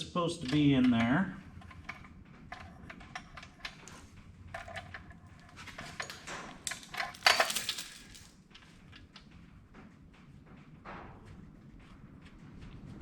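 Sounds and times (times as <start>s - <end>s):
metal tools clinking and clattering: 4.6s - 8.3s.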